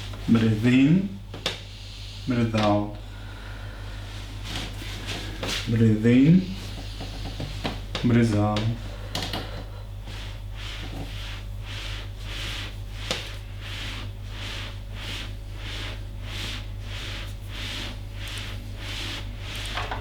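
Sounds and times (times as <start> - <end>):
steady low hum: 0.0 - 20.0
hands rubbing skin: 4.1 - 20.0.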